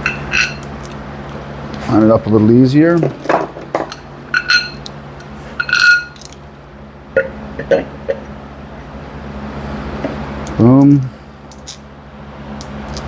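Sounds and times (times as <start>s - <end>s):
metallic clinks of steel parts: 0.0s - 1.0s, 2.9s - 6.4s, 10.8s - 11.9s, 12.6s - 13.0s.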